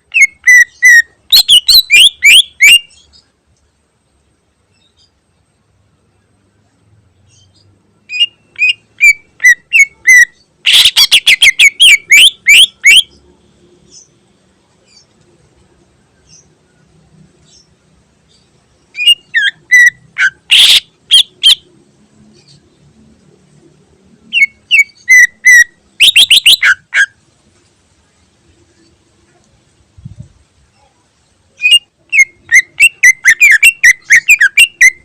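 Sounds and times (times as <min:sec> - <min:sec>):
bird singing whistled notes: 0:00.0 - 0:03.3, 0:07.4 - 0:13.2, 0:18.4 - 0:21.6, 0:24.3 - 0:27.1, 0:31.5 - 0:35.0.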